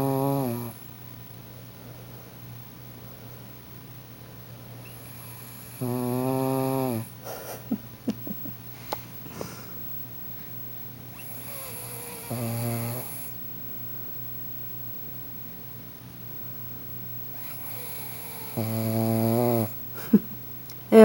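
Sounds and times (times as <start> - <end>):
dog snoring: 0.0 - 0.8, 4.8 - 7.2, 11.1 - 13.4, 17.3 - 19.8.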